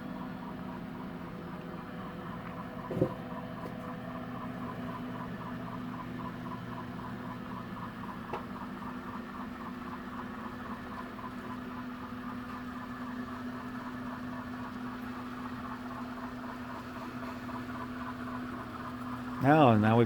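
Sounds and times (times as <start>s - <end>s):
model train mechanical hum: 0.0s - 20.0s.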